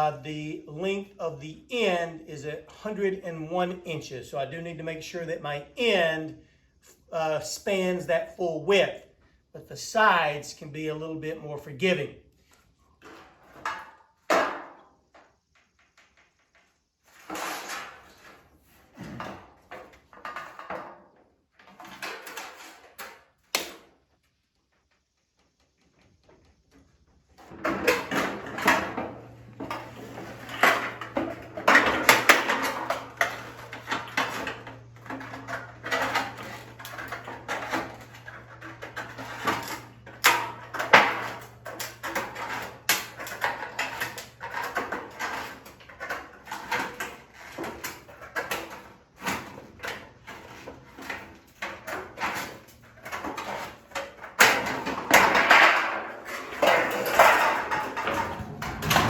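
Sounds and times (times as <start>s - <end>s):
metal roofing sheets clanking: 13.0s - 14.9s, 17.1s - 23.9s, 27.4s - 59.0s
steady low hum: 57.0s - 59.0s.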